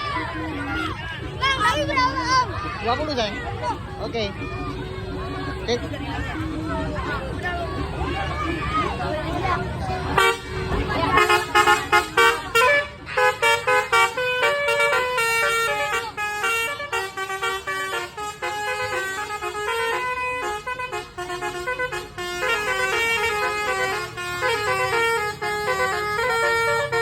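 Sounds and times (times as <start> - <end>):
multi-trumpet horn playing a tune: 10.1 - 27.0.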